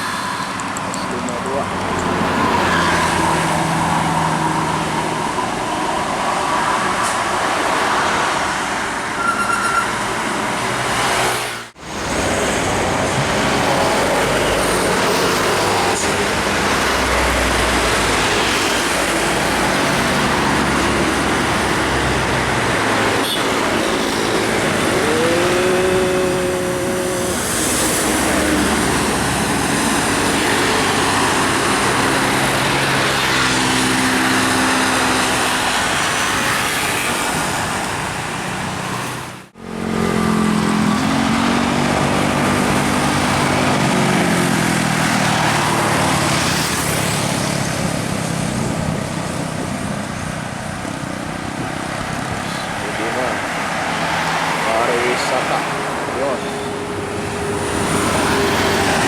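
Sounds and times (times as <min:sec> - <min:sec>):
road traffic passing at speed: 0:00.0 - 0:59.0
vehicle horn: 0:23.2 - 0:23.6.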